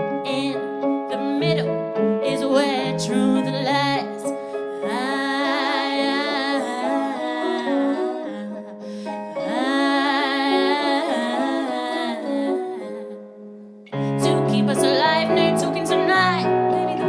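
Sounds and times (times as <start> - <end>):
sustained accompanying chords: 0.0 - 4.6
woman singing wordless melody: 0.0 - 17.0.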